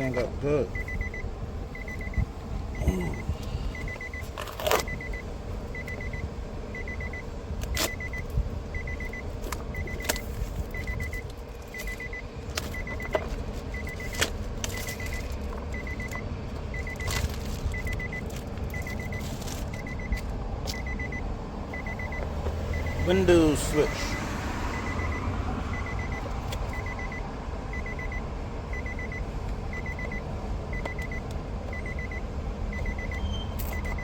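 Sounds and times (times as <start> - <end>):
car warning chime beeping: 0.0 - 34.0
plastic packaging crinkling: 17.0 - 19.8.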